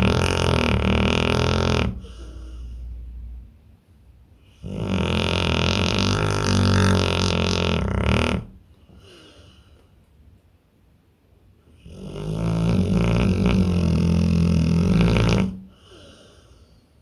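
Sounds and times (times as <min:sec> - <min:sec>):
dog snoring: 0:00.0 - 0:02.8, 0:04.4 - 0:08.6, 0:11.7 - 0:16.4.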